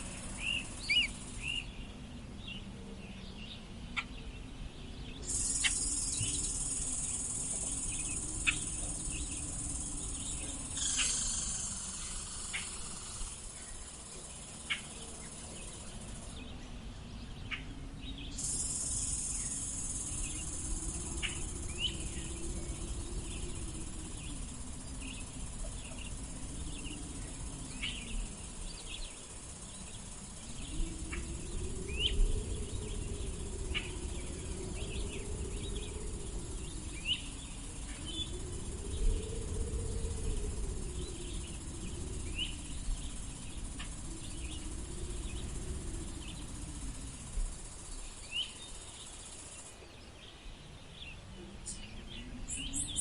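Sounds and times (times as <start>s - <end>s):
steady high hiss: 0.0s - 2.4s, 5.1s - 53.0s
gentle wind gusts: 0.0s - 53.0s
bird chirps: 0.1s - 1.7s, 5.2s - 15.8s.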